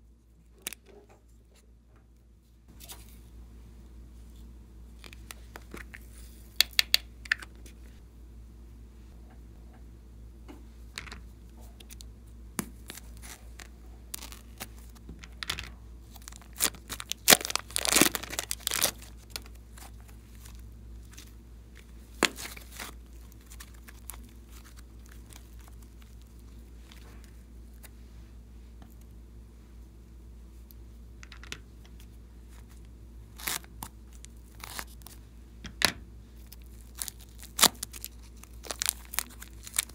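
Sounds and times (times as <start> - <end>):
low electrical hum: 0.0 - 39.9
plastic bags crinkling: 12.8 - 15.0, 16.1 - 27.0, 36.4 - 39.9.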